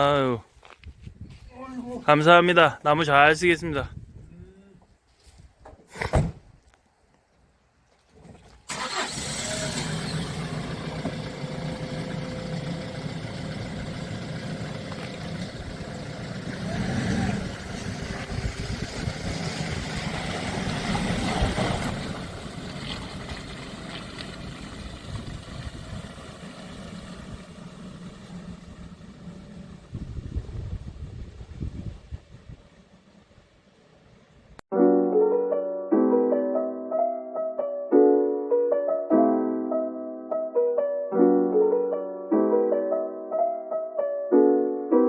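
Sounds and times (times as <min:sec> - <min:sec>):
thump: 0:05.6 - 0:06.5
vehicle engine starting and revving: 0:08.7 - 0:34.2.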